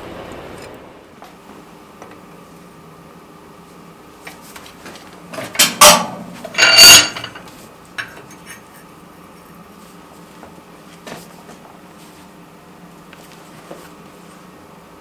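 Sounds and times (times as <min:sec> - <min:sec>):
metal clattering against metal: 0:05.4 - 0:08.4
light metal clinks: 0:05.9 - 0:08.6.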